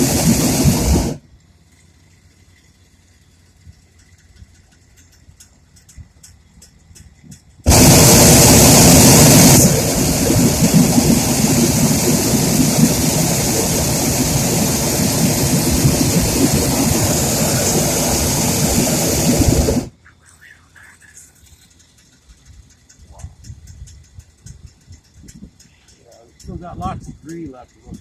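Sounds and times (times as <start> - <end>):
propane burner blast: 0.0 - 1.3, 7.6 - 20.0.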